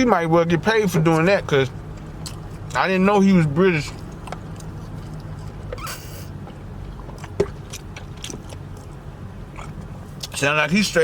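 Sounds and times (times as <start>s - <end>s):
chewing: 1.8s - 2.8s, 3.4s - 10.4s
wet mouth clicks: 9.5s - 10.4s.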